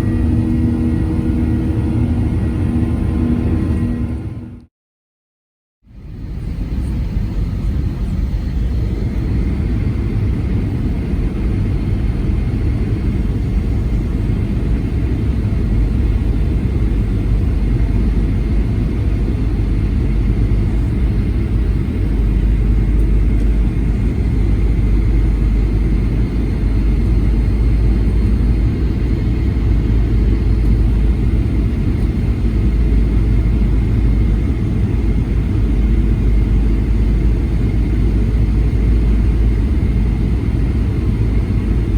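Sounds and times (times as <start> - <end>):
faint steady whine: 0.0 - 4.7
jet engine and airflow rumble: 0.0 - 4.7, 5.9 - 41.9.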